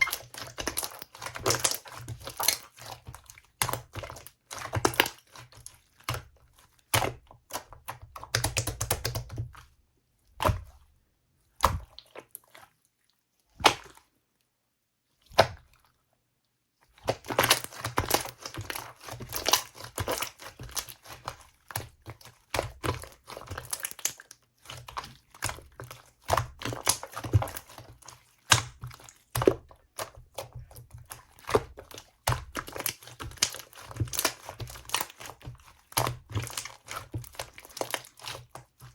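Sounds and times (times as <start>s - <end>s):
slime clicking and popping: 6.9s - 9.4s, 28.5s - 30.6s.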